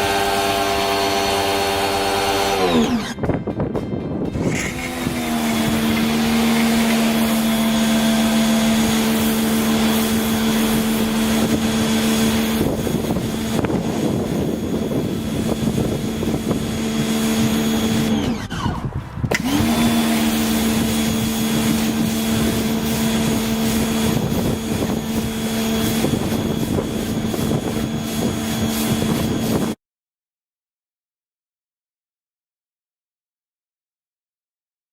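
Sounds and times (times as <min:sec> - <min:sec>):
pressure washer motor whining: 0:00.0 - 0:03.5, 0:04.3 - 0:29.8
pressure washer hiss: 0:04.4 - 0:18.2, 0:19.3 - 0:29.8.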